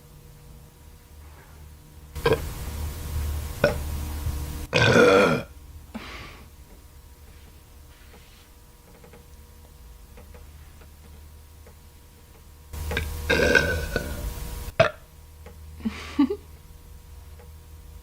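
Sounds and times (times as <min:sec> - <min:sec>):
soft throat sound: 0:02.2 - 0:02.5, 0:03.6 - 0:03.8, 0:04.7 - 0:06.2, 0:13.0 - 0:15.1
woman belching: 0:02.2 - 0:02.5, 0:03.6 - 0:03.8, 0:04.7 - 0:05.5, 0:13.0 - 0:14.2, 0:14.8 - 0:15.0.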